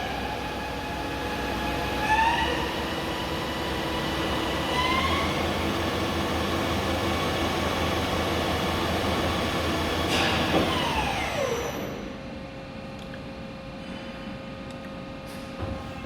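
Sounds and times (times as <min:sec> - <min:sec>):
lathe spindle whine rising: 0:10.6 - 0:12.2.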